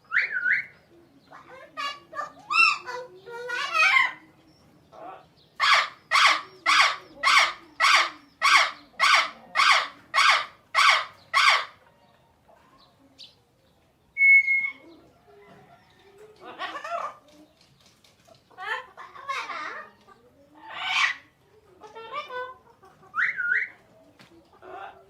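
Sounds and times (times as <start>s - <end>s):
parrot squawking: 1.3s - 4.2s, 5.0s - 11.8s, 20.6s - 21.2s.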